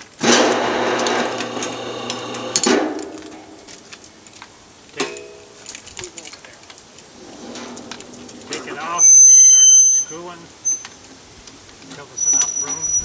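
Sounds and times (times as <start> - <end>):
ringing steel clanks: 5.0 - 5.9.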